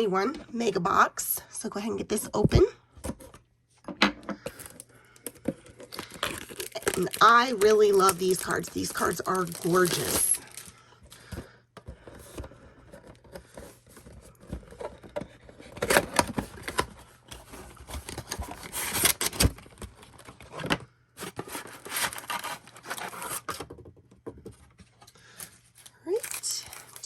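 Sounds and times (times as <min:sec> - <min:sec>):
cardboard box handling: 0:05.5 - 0:23.7.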